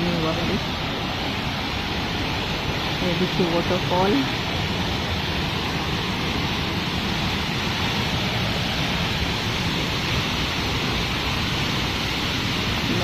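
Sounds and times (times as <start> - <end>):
waterfall: 0.0 - 13.0.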